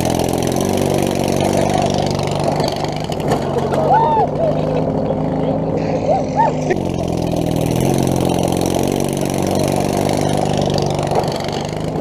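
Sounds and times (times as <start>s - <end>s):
riding lawnmower engine running: 0.0s - 12.0s.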